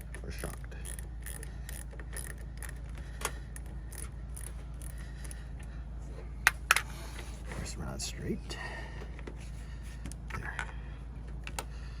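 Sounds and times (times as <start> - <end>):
wrench clicking on bolt: 0.0 - 5.4
steady low hum: 0.0 - 12.0.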